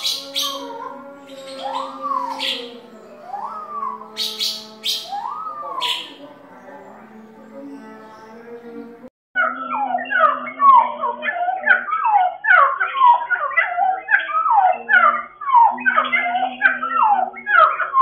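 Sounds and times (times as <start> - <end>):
songbird singing whistled notes: 1.3 - 8.3.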